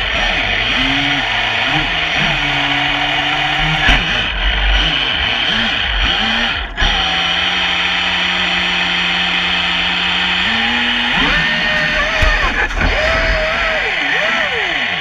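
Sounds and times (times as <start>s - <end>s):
electric motor whining: 0.0s - 15.0s.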